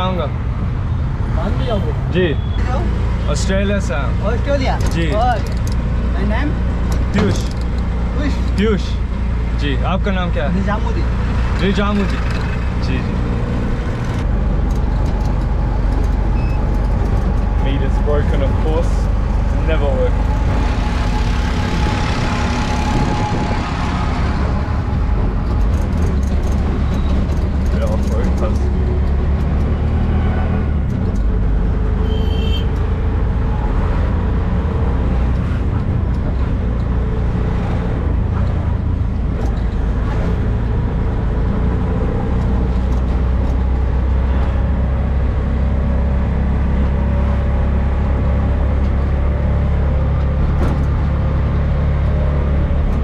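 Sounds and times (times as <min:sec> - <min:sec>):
rickshaw engine humming: 0:00.0 - 0:53.0.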